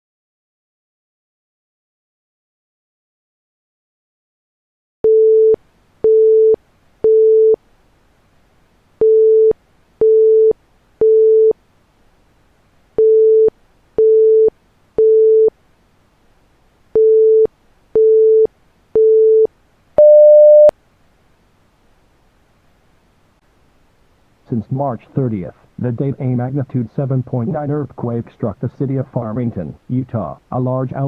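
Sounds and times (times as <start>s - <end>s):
long high-pitched beep: 17.0s - 20.7s
electronic alert beeps: 20.0s - 20.7s.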